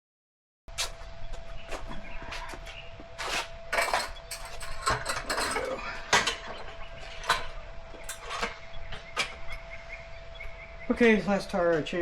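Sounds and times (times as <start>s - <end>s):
metal tools clinking: 3.7s - 8.6s.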